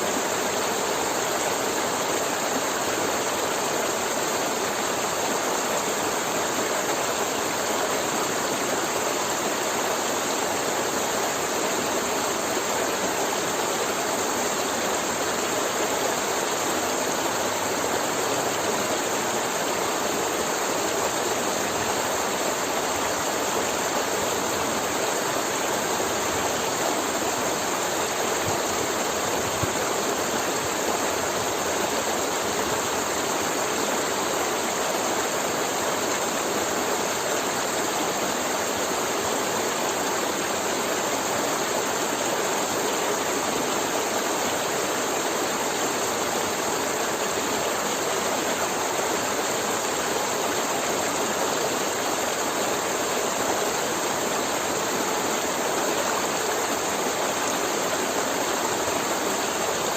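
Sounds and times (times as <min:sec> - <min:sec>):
river flowing over rocks: 0:00.0 - 0:59.9.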